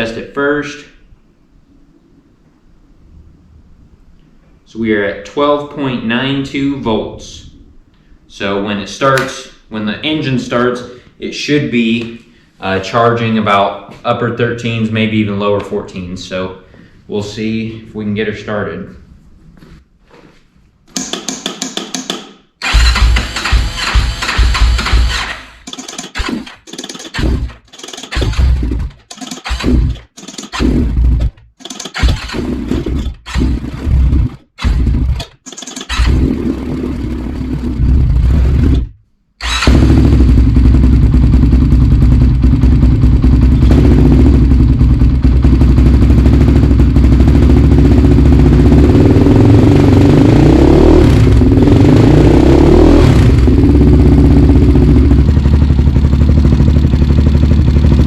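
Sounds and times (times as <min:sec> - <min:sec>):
quad engine idling and revving: 0:22.6 - 0:31.2, 0:39.4 - 0:58.0
quad engine starting: 0:22.6 - 0:58.0.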